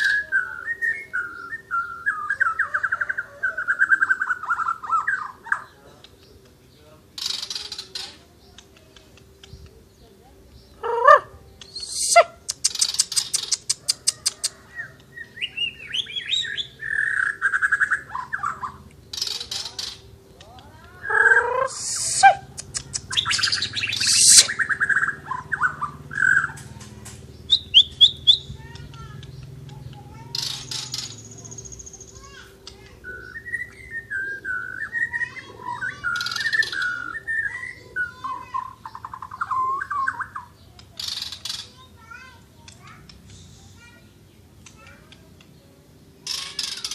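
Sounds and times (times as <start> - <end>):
songbird whistling and trilling: 0.0 - 5.7, 11.0 - 20.0, 21.0 - 26.6, 27.5 - 28.5, 33.0 - 41.6
bird singing: 0.0 - 46.9.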